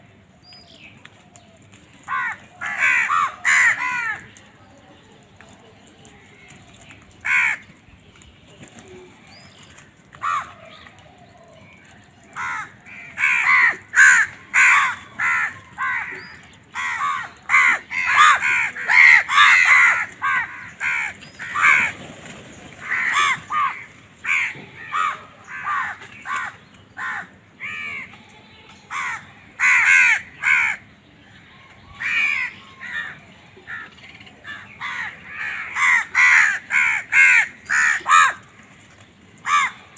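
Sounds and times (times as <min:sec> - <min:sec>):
crow cawing: 0:02.1 - 0:04.2, 0:07.2 - 0:07.6, 0:10.2 - 0:10.5, 0:12.4 - 0:21.9, 0:22.8 - 0:28.1, 0:28.9 - 0:30.8, 0:33.7 - 0:38.5, 0:39.4 - 0:39.8.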